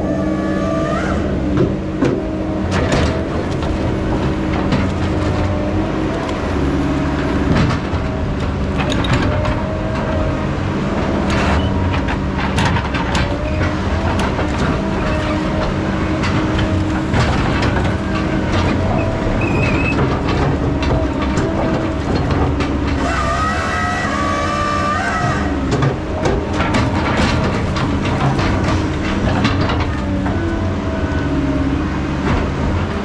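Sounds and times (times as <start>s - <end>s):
high squealing whine: 0.0s - 1.6s, 22.9s - 26.0s
heavy machinery running: 0.0s - 33.0s
metallic clanks and knocks: 11.3s - 23.5s, 24.9s - 30.4s.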